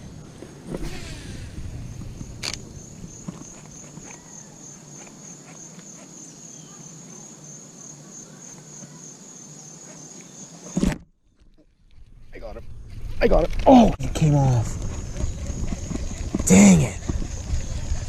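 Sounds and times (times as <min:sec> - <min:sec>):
insects trilling: 0:00.6 - 0:10.9, 0:12.2 - 0:18.0.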